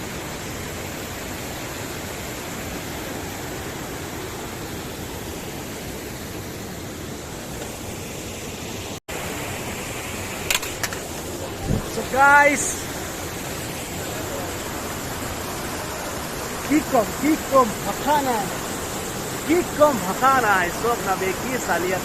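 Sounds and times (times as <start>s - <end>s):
waterfall rushing: 0.0s - 22.0s.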